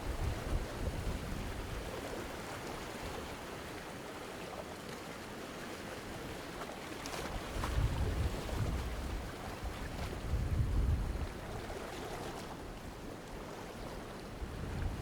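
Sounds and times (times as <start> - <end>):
ocean waves breaking on rocks: 5.5 - 15.0.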